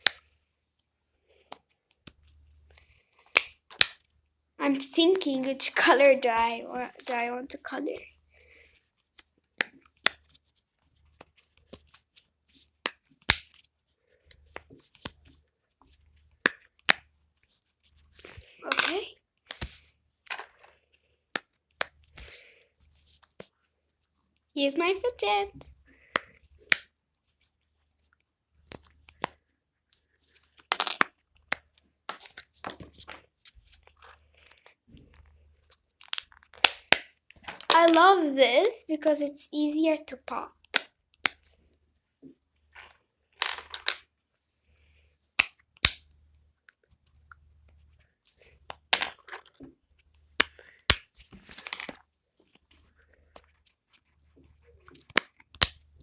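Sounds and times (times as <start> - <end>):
fidget toy popping: 18.6 - 19.6, 36.6 - 38.2
crinkly plastic crackles: 32.1 - 38.4.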